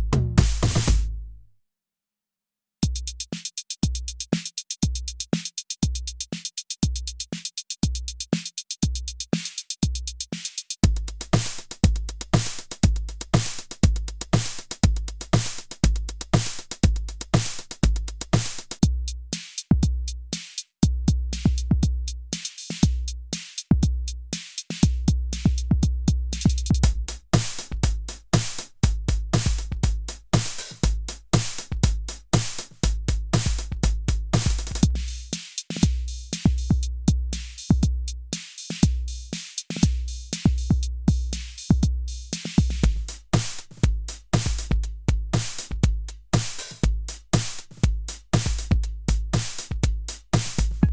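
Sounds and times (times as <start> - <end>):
electronic drum machine beat: 0.0 - 1.2, 2.8 - 50.9.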